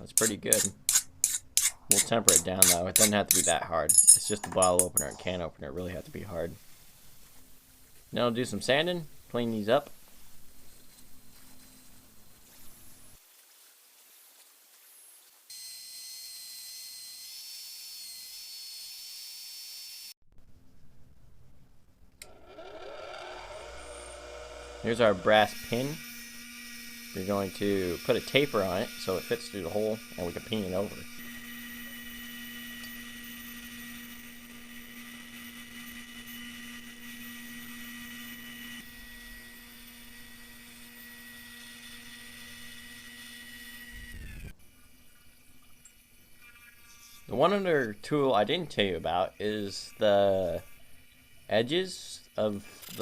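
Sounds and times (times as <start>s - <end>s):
electric sander whining: 22.2s - 44.5s
small motor spinning up: 22.2s - 48.0s.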